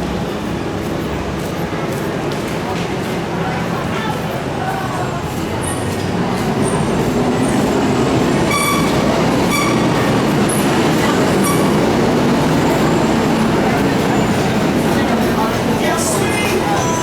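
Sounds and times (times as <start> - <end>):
large road vehicle rumbling: 0.0 - 17.0
high-pitched squeals: 5.6 - 17.0.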